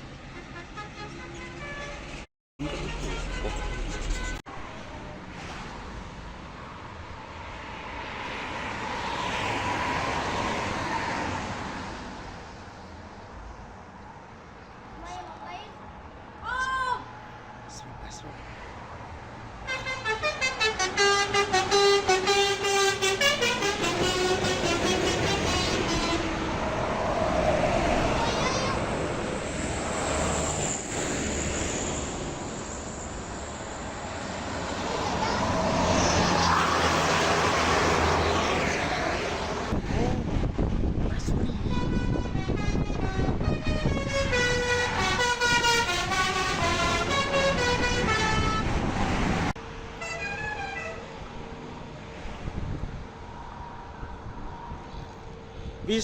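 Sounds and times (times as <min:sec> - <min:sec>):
road traffic passing: 0:00.0 - 0:56.0
vehicle driving past: 0:23.0 - 0:40.6.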